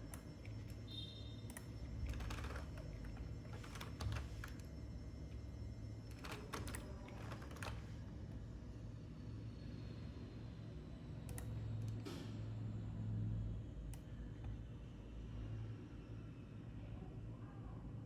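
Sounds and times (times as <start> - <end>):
low steady hum: 0.0 - 12.0
keyboard keys clicking: 1.5 - 4.7, 6.1 - 7.9.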